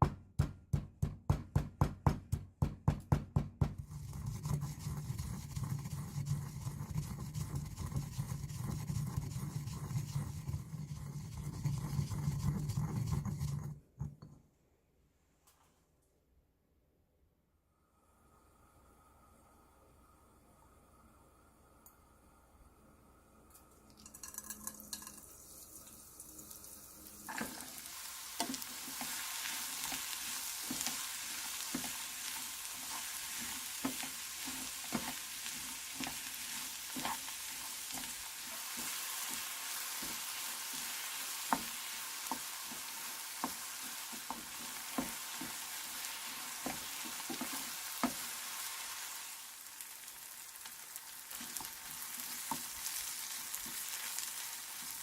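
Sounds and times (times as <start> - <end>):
food sizzling in hot oil: 24.0 - 55.0.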